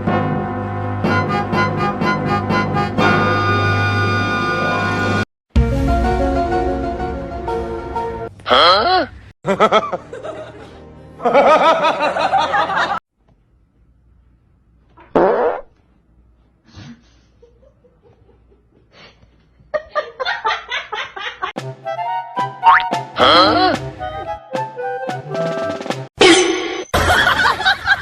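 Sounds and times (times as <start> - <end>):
fart-like sound: 15.0 - 15.8
music cue with drums: 21.6 - 26.1.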